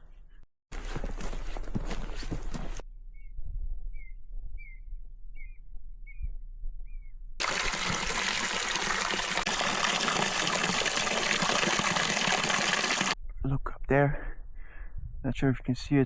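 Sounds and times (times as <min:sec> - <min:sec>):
rushing water: 0:07.4 - 0:13.2.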